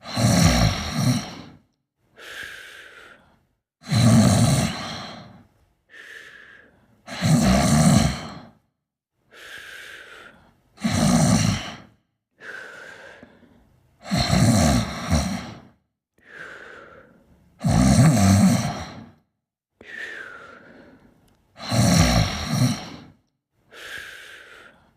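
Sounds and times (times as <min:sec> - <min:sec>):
loud rattling snores: 0:00.0 - 0:01.6, 0:03.8 - 0:05.4, 0:07.1 - 0:08.6, 0:10.8 - 0:12.0, 0:14.0 - 0:15.8, 0:17.6 - 0:19.2, 0:21.6 - 0:23.2.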